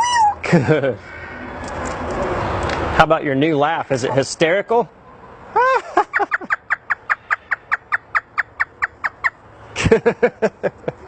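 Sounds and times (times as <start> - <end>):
parrot mimicking laughter: 0.0 - 0.4, 5.5 - 9.2.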